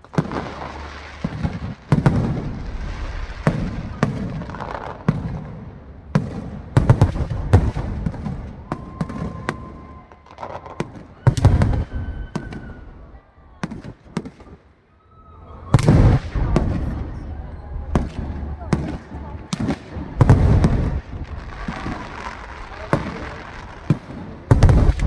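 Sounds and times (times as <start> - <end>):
fireworks bangs and bursts: 0.0 - 14.8, 15.7 - 25.0
fireworks crackling: 0.0 - 25.0
fireworks whistle: 8.6 - 25.0.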